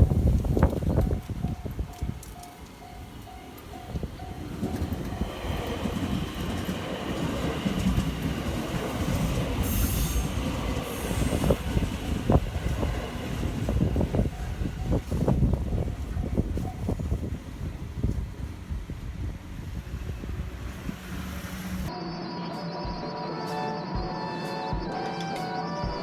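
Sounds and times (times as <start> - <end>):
wheels knocking over rail joints: 0.0 - 9.7
electric train rumbling: 0.0 - 22.0.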